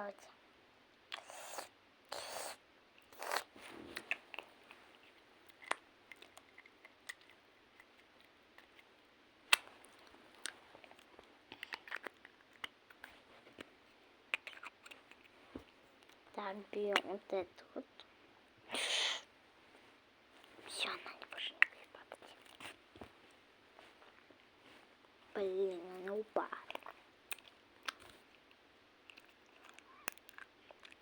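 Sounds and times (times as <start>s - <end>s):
crunching and chewing candy: 5.4s - 8.9s, 9.5s - 13.7s, 14.3s - 15.4s, 26.5s - 31.0s.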